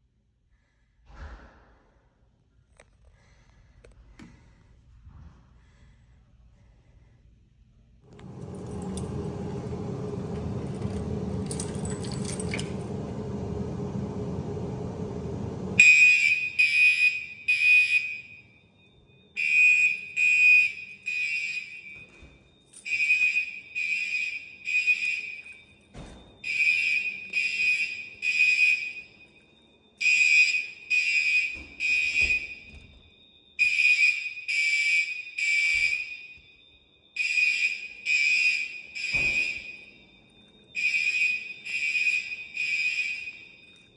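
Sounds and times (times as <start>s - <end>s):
low hum: 8.0s - 16.0s
fire alarm horn blasts: 8.1s - 43.9s.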